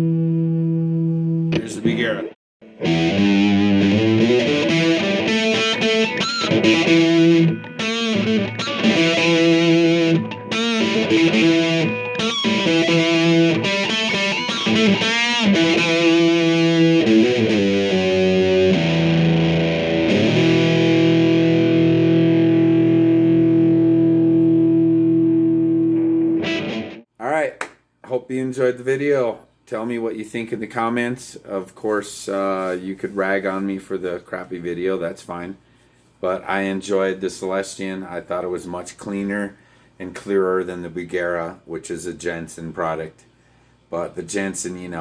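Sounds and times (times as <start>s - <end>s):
distorted electric guitar: 0.0s - 27.0s.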